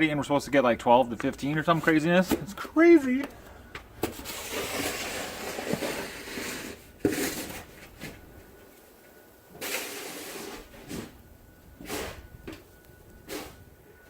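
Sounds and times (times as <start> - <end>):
crunching and scraping in snow: 4.2 - 8.3.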